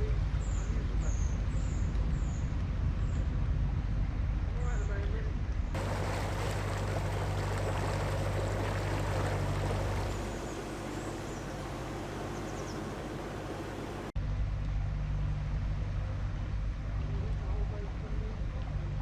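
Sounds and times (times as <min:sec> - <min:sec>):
faint bird chirps: 0:05.8 - 0:14.1
diesel engine running: 0:05.8 - 0:14.2
rain hiss: 0:05.8 - 0:14.2.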